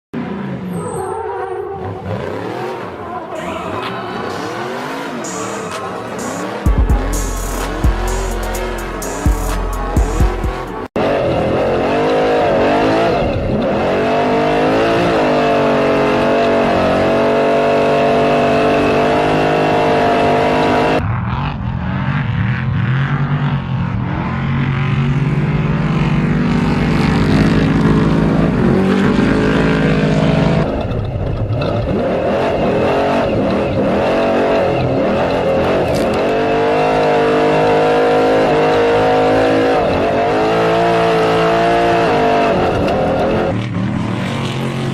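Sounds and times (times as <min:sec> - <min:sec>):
racing truck engines revving: 0:00.2 - 0:44.9
lower-pitched engine drone: 0:01.8 - 0:14.0.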